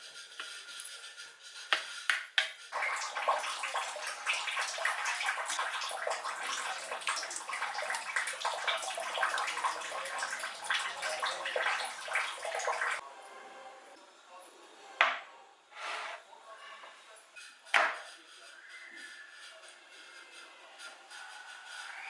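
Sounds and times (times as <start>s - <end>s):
tap water splashing: 1.7s - 13.0s.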